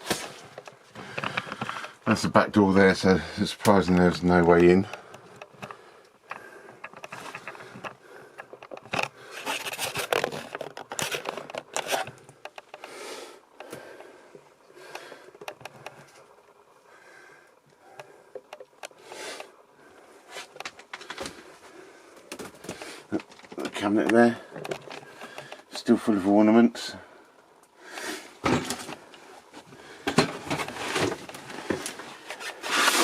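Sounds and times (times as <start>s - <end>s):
scraping and rustling: 6.8s - 13.0s, 28.4s - 33.0s.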